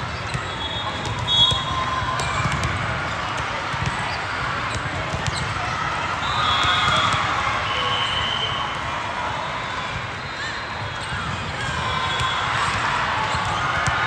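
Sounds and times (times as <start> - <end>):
ball bouncing on court floor: 0.0 - 5.6, 10.9 - 14.0.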